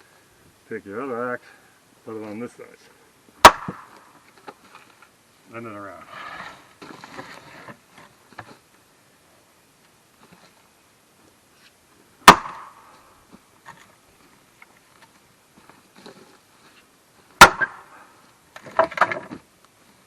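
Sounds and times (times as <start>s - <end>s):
axe striking wood block: 3.4s - 3.9s, 12.2s - 12.8s, 17.4s - 17.8s.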